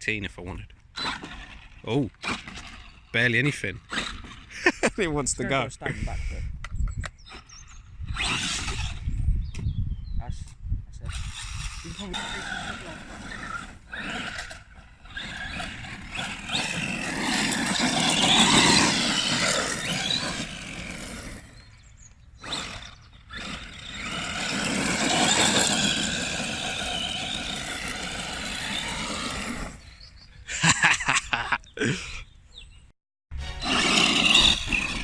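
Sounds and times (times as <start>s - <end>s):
electric toy car motor whining: 0.9s - 3.2s, 3.8s - 4.6s, 7.2s - 9.4s, 11.1s - 30.0s, 33.4s - 35.0s.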